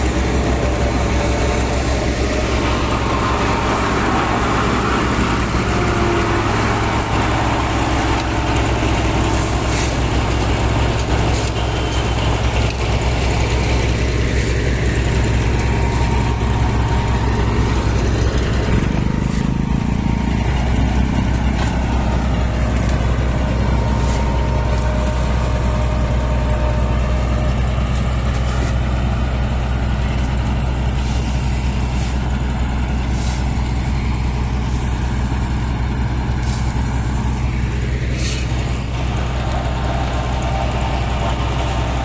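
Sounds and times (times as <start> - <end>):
construction machinery engine hum: 0.0 - 42.0.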